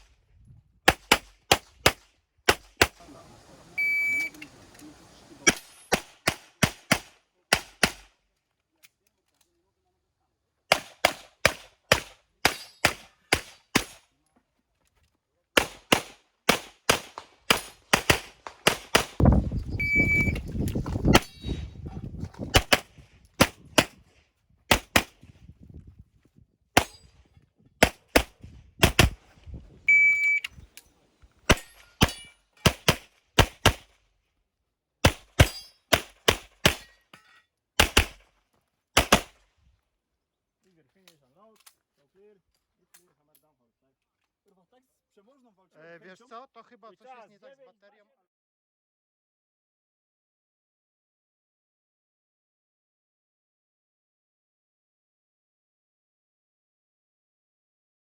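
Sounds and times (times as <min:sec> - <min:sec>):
shot timer beep: 0:03.8 - 0:04.4, 0:19.8 - 0:20.4, 0:29.9 - 0:30.5
handgun shots: 0:10.7 - 0:14.0, 0:15.6 - 0:19.2, 0:27.8 - 0:29.2, 0:35.0 - 0:36.9, 0:37.8 - 0:38.2, 0:39.0 - 0:39.4.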